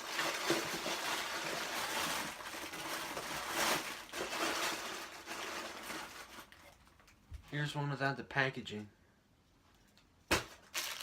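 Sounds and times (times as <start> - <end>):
plastic wrappers crinkling: 0.0 - 7.6, 10.3 - 11.0.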